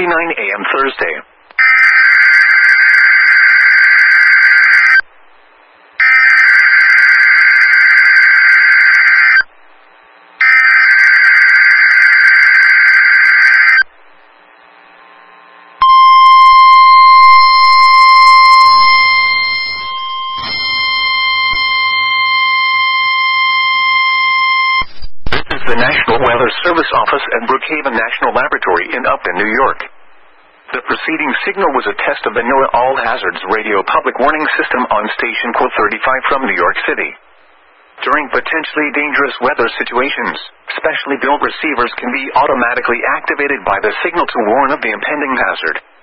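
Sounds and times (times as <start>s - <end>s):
steady warning alarm tone: 1.6s - 5.0s, 6.0s - 9.5s, 10.3s - 14.2s, 15.8s - 24.9s
buzzing digital data bursts: 15.8s - 23.1s.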